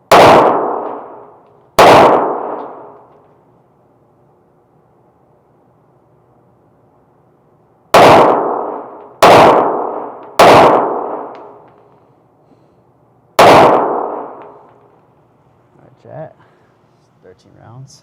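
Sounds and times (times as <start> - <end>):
pistol shots echoing indoors: 0.0 - 3.4, 7.9 - 11.9, 13.4 - 15.0.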